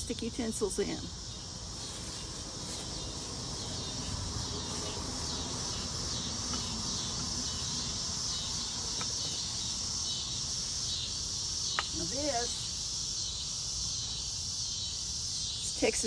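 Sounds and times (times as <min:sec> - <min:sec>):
cicadas buzzing: 0:00.0 - 0:16.0.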